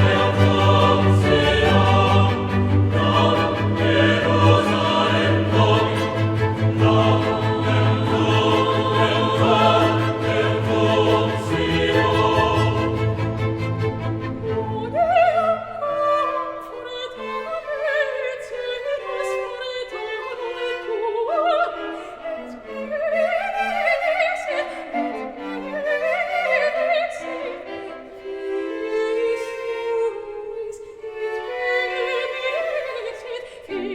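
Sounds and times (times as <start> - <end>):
bowed strings: 0.0 - 24.3
operatic singing voice: 0.0 - 33.9.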